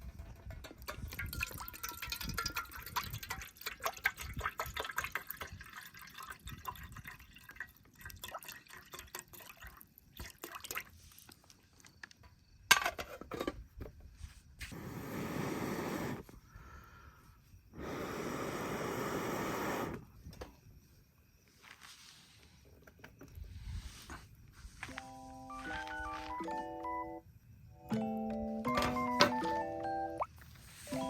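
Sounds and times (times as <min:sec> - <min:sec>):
liquid pouring into container: 0:01.1 - 0:10.9.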